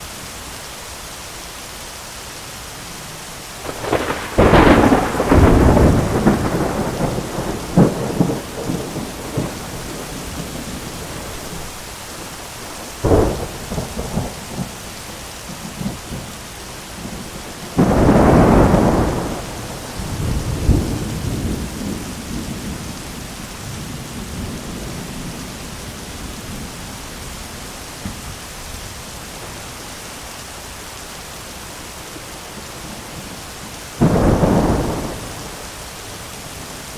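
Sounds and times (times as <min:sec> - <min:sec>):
heavy rain falling: 0:00.0 - 0:36.9
sharp thunder crack: 0:03.6 - 0:11.7, 0:13.0 - 0:14.8, 0:17.0 - 0:22.9, 0:34.0 - 0:35.6
thunder rumbling: 0:03.6 - 0:29.7, 0:32.8 - 0:36.9.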